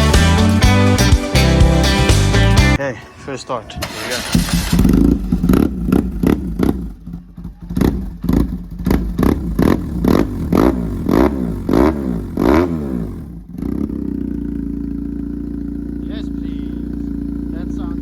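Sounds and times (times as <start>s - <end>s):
motorcycle engine revving and idling: 3.8s - 18.0s.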